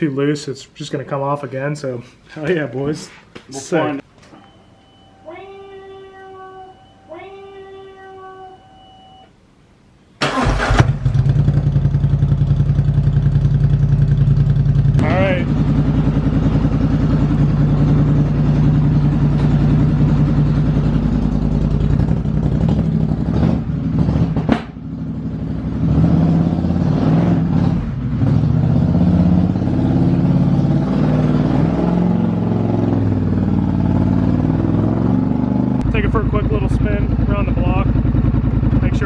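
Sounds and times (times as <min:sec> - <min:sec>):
atv engine revving: 0:10.2 - 0:39.0.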